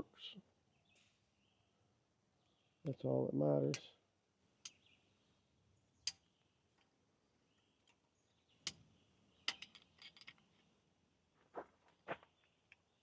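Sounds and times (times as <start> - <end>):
small tools clicking and tapping: 8.6 - 8.8, 9.4 - 10.7.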